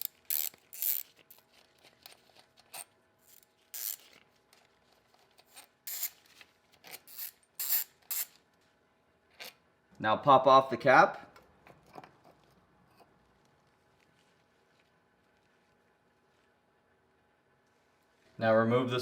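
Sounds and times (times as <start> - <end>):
hex bit scraping metal screws: 0.0 - 1.3, 3.3 - 4.0, 6.9 - 8.3.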